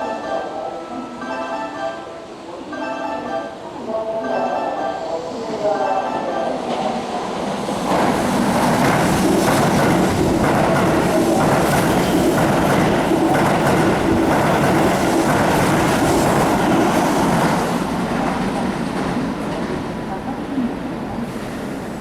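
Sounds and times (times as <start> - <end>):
train wheels rushing on rails: 6.6 - 22.0.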